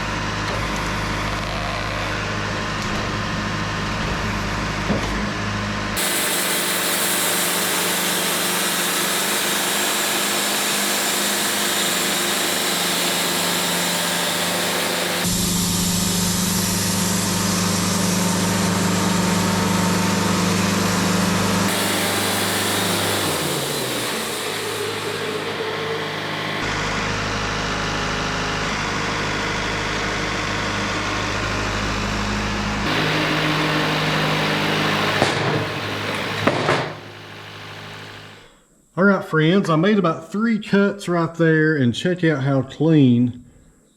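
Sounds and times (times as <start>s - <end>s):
diesel engine running: 0.0s - 38.4s
band blade sawing log: 6.0s - 20.0s, 21.6s - 26.7s, 32.9s - 38.2s.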